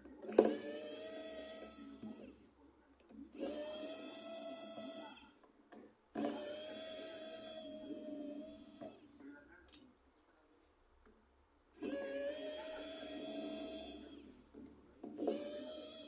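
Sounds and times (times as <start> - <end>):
small motor whirring: 0.2 - 2.5, 3.3 - 5.4, 6.2 - 9.1, 11.8 - 14.4, 15.0 - 16.0.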